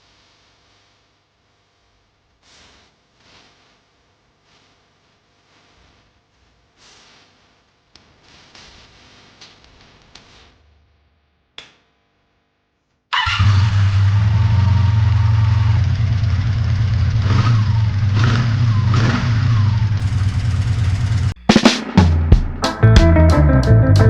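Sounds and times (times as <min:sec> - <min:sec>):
motorcycle engine starting and running: 0:13.2 - 0:21.4.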